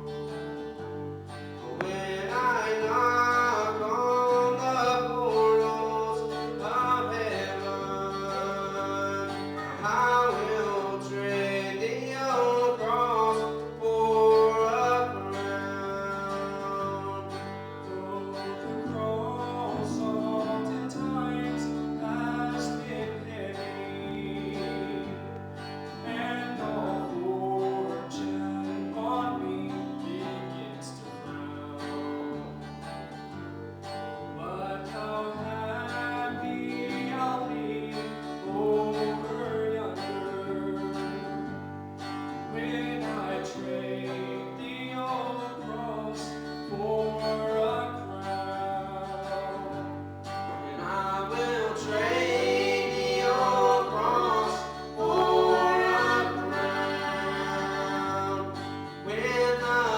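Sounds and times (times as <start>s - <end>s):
guitar playing chords: 0.0s - 59.9s
person singing: 1.6s - 25.4s, 50.5s - 59.9s.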